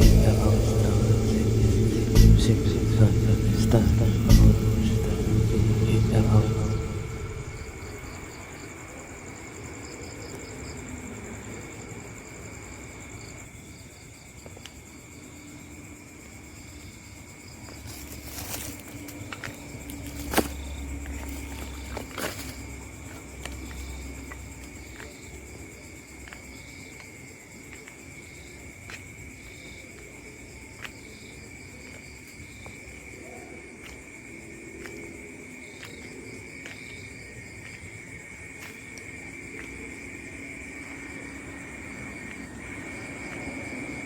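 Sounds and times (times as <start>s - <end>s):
low rumble: 0.0s - 8.8s, 17.8s - 25.6s
insect chorus: 0.0s - 44.0s.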